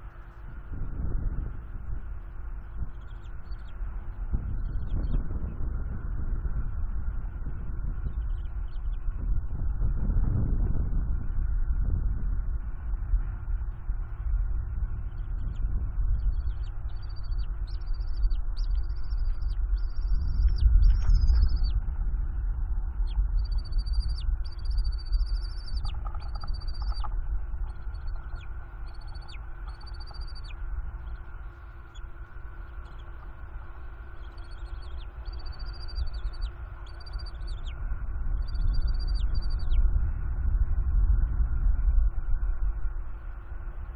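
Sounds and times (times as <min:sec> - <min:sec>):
wind rumble on microphone: 0:00.0 - 0:43.9
young eagle chittering calls: 0:23.5 - 0:27.1, 0:27.7 - 0:31.2, 0:34.1 - 0:37.7.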